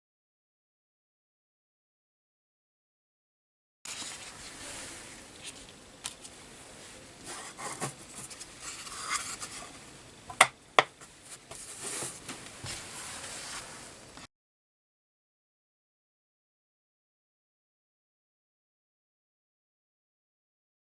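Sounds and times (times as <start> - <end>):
handling rubbing noises: 3.9 - 14.2.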